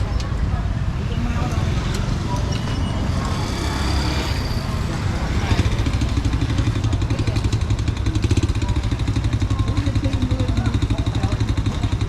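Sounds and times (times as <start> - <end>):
faint background voices: 0.0 - 12.0
motorcycle engine running: 0.0 - 12.0.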